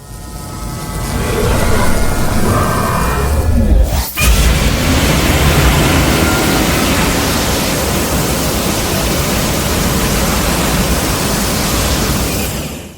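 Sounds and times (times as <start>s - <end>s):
low rumble: 1.0s - 4.5s
loud rushing noise: 1.0s - 8.3s.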